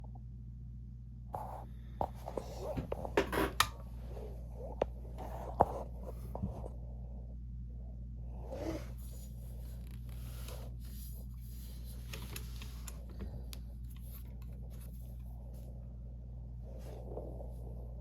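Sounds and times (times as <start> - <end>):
low hum: 0.0 - 18.0
scraping and rubbing handling noise: 1.4 - 6.8, 8.5 - 15.8.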